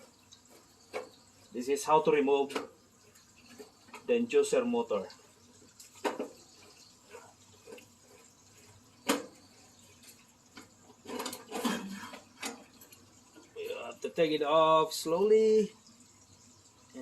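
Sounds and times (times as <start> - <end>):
metal parts clicking and clunking: 10.1 - 13.0.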